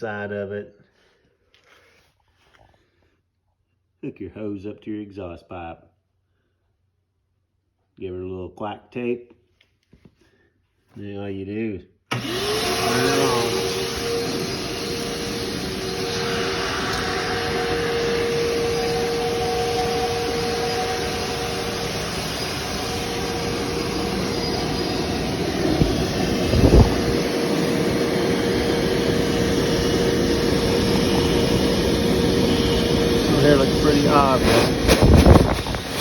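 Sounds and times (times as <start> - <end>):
shop vac motor whine: 12.1 - 36.0.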